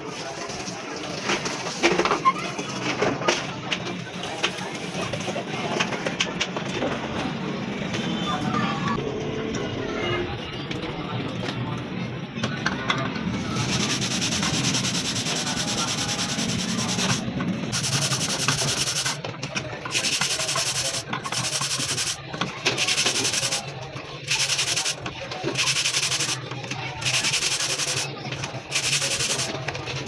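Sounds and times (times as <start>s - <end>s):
hissing spray bursts: 13.6s - 19.2s, 19.9s - 22.2s, 22.8s - 23.6s, 24.3s - 26.4s, 27.0s - 28.1s, 28.7s - 29.5s.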